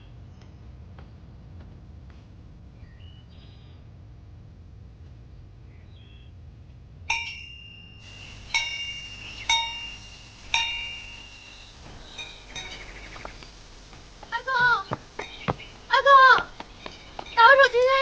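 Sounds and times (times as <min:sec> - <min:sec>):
small metal bell ringing: 0:07.1 - 0:12.9.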